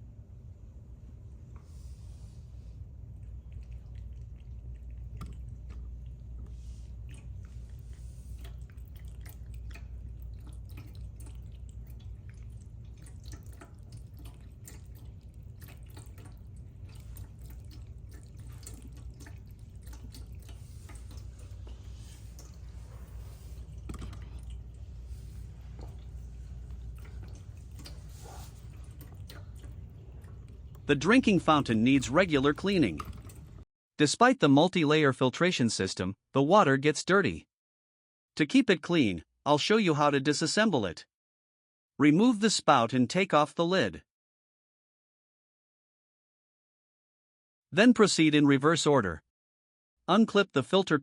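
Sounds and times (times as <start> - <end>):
steady low hum: 0.0 - 33.6
water trickling into bowl: 3.1 - 33.6.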